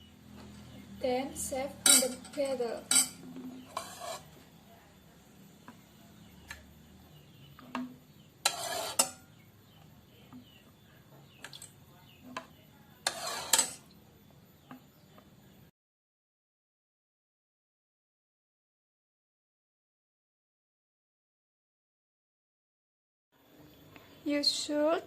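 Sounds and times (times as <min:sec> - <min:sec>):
kitchen utensils clinking: 0:01.8 - 0:04.3, 0:07.8 - 0:09.3, 0:13.0 - 0:13.9.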